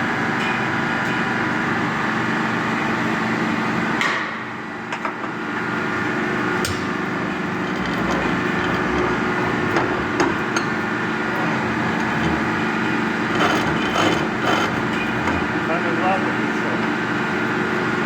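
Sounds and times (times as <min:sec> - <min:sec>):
welding machine hum: 0:06.4 - 0:17.5.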